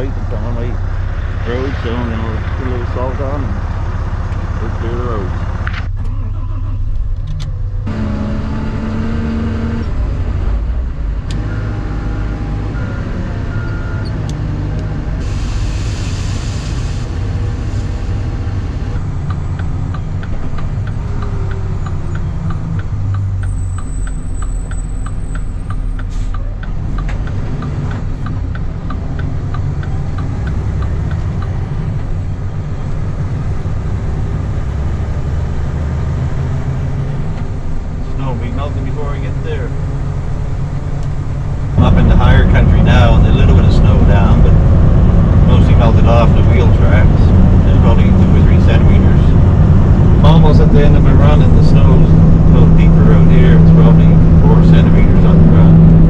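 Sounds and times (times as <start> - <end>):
diesel truck engine running: 0.0 - 56.0
road rumble: 0.0 - 56.0
regular ticking: 19.0 - 33.8.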